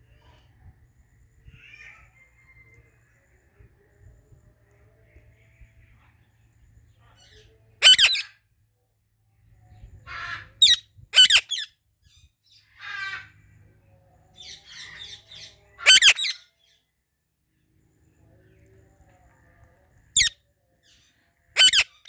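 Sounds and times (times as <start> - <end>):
raspy parrot chatter: 7.8 - 8.2, 15.8 - 16.4, 21.6 - 22.0
parrot squawking: 7.8 - 8.3, 10.2 - 11.7, 15.8 - 16.4, 21.6 - 22.0.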